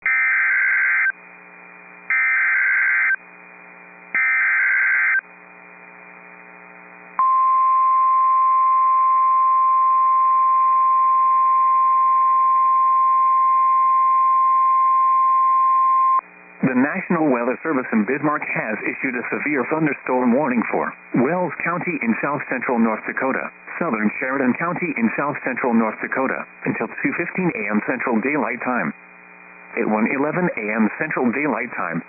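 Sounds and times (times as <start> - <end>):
steady alarm tone: 0.0 - 1.1, 2.1 - 3.2, 4.1 - 5.2
screeching digital data bursts: 4.2 - 5.2.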